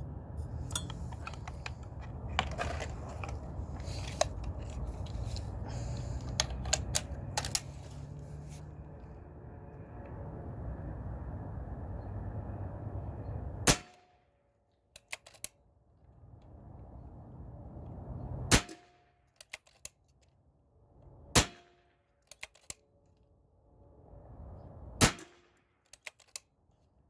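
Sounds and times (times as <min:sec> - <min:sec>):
light clicks of rifle action: 0:00.7 - 0:07.7, 0:15.0 - 0:15.6, 0:22.2 - 0:22.8, 0:25.9 - 0:26.5.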